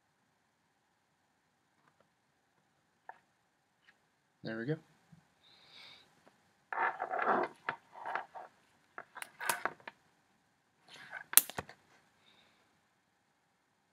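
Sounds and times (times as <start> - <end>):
rustling: 6.7 - 10.0
sharp clicks of small hard parts: 11.3 - 11.7.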